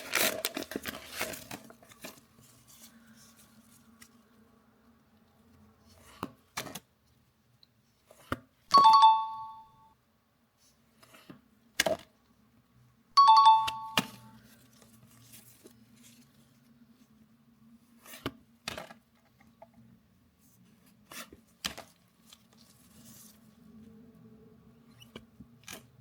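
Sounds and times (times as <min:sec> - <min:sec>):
two-note ding-dong chime: 0:08.7 - 0:09.9, 0:13.2 - 0:14.3.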